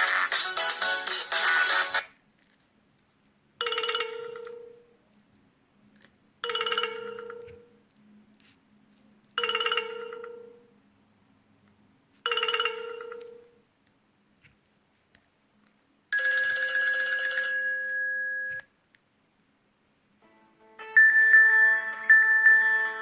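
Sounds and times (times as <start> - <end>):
bell-like ringtone chime: 16.2 - 18.6, 20.9 - 23.0.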